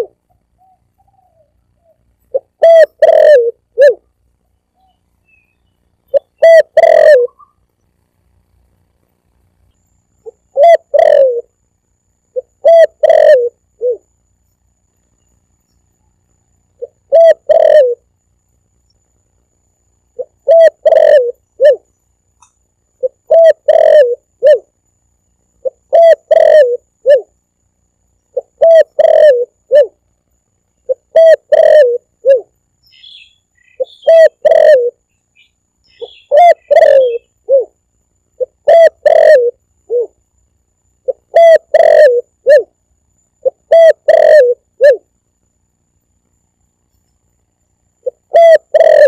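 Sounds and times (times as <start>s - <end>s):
dove cooing: 0.0s - 4.1s, 6.1s - 7.6s, 10.2s - 11.6s, 12.3s - 14.1s, 16.8s - 18.0s, 20.2s - 21.9s, 23.0s - 24.7s, 25.6s - 27.4s, 28.3s - 30.0s, 30.8s - 35.0s, 36.0s - 37.8s, 38.4s - 40.2s, 41.0s - 42.7s, 43.4s - 45.1s, 48.0s - 49.0s
faint high chirps: 0.0s - 8.6s, 9.3s - 37.8s.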